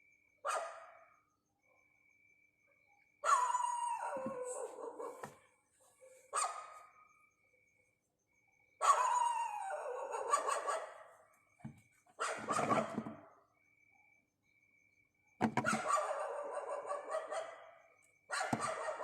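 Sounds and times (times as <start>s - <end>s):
dog howling call: 3.2s - 5.3s, 8.8s - 11.0s, 18.4s - 19.0s.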